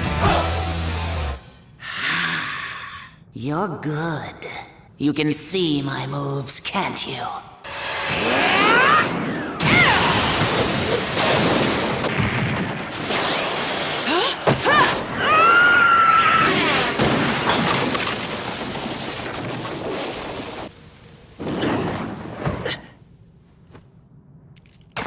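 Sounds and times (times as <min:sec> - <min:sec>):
booming crashes and impacts: 0:09.6 - 0:15.2.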